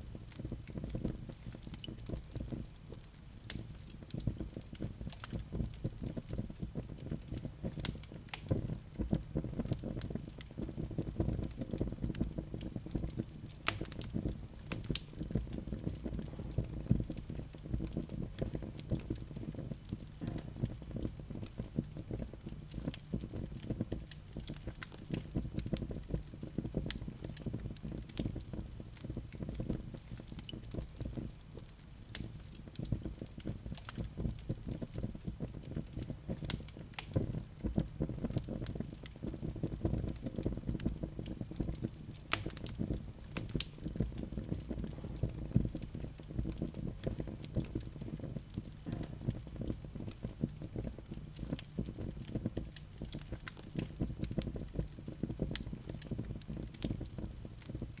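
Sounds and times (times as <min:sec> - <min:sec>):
low rumble of flames: 0:00.0 - 0:58.0
wood fire crackling: 0:00.0 - 0:58.0.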